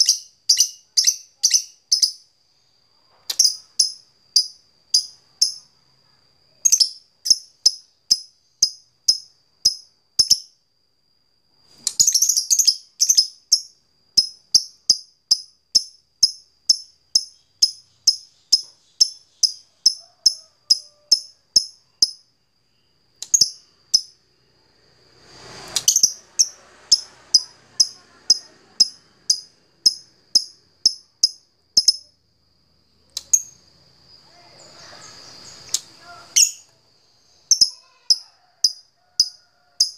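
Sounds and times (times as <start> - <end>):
lovebird sharp high chirps: 0.0 - 2.2, 3.3 - 5.7, 6.6 - 10.6, 11.8 - 22.2, 23.2 - 24.2, 25.5 - 32.2, 33.1 - 33.7, 34.8 - 36.8.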